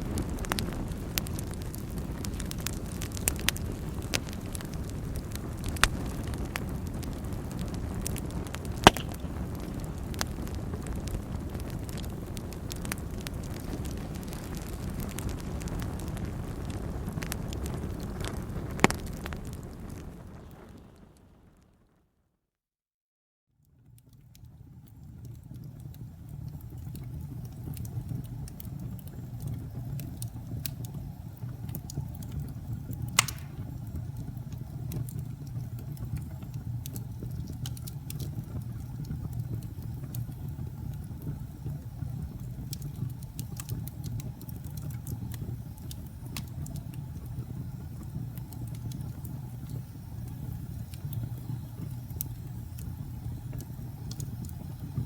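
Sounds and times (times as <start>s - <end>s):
fire crackling: 0.0s - 21.7s, 23.8s - 55.0s
fire rumbling: 0.0s - 21.9s, 23.8s - 55.0s
loud sharp pop: 8.9s - 9.5s, 33.2s - 33.7s.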